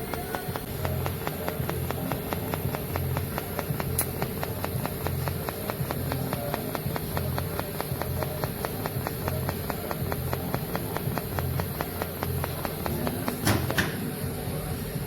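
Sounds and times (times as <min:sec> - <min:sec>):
rapid mechanical ticking: 0:00.0 - 0:14.4
sharp knocks: 0:11.1 - 0:14.0.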